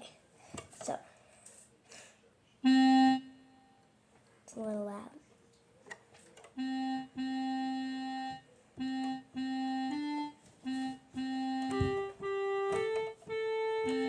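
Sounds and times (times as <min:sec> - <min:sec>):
electronic keyboard slow melody: 0:02.6 - 0:03.7, 0:06.5 - 0:14.0.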